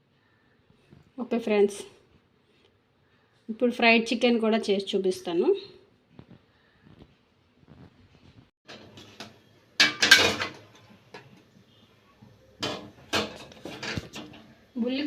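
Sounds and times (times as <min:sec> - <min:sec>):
metal cookware clanking: 0:08.7 - 0:11.5, 0:12.6 - 0:14.6.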